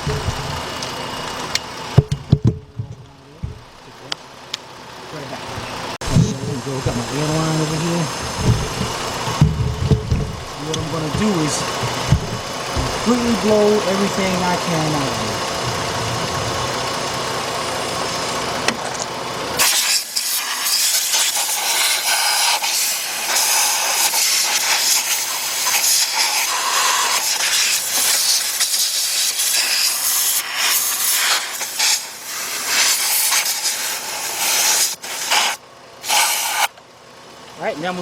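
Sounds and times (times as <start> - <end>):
car engine idling: 0.0 - 19.6, 22.8 - 38.0
compressed air hissing: 19.6 - 36.7.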